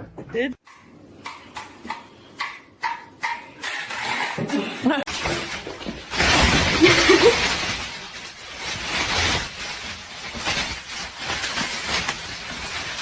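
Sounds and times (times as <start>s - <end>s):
loud crash: 6.1s - 7.9s.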